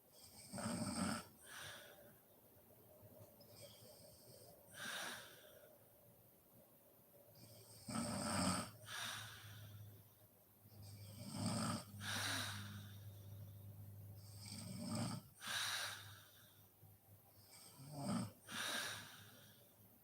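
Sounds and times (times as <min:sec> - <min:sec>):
woman snoring: 0:00.3 - 0:01.8, 0:07.7 - 0:09.8, 0:10.9 - 0:13.4, 0:14.2 - 0:16.3, 0:17.6 - 0:19.3.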